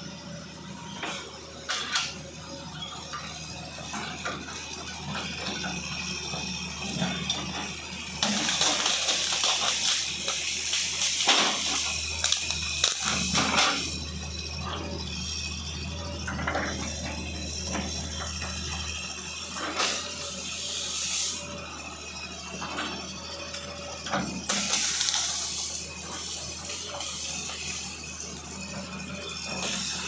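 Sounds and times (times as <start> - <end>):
diesel engine running: 0.0 - 30.0
hissing crackle: 8.2 - 14.0, 24.5 - 27.9.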